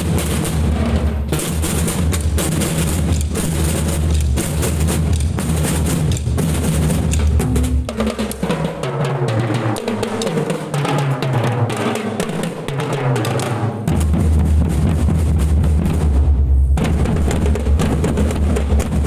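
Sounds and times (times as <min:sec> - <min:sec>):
snare drums playing: 0:00.0 - 0:19.0
bass drums playing: 0:01.3 - 0:08.4.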